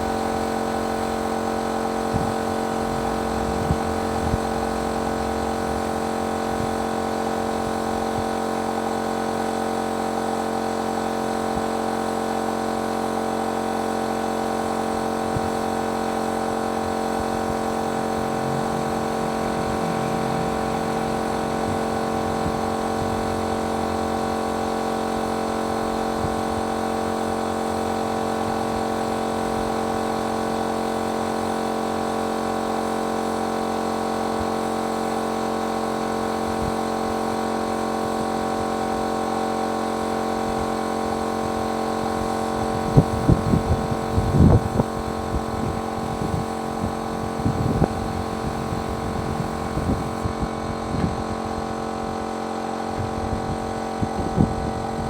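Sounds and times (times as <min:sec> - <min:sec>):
machine motor humming: 0:15.8 - 0:26.1.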